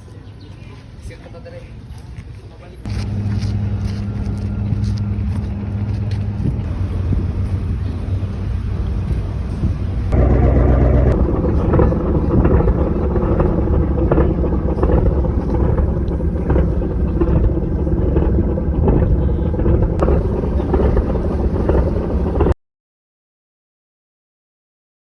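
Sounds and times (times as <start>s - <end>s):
wind buffeting microphone: 1.7s - 22.6s
vehicle engine running: 2.9s - 22.6s.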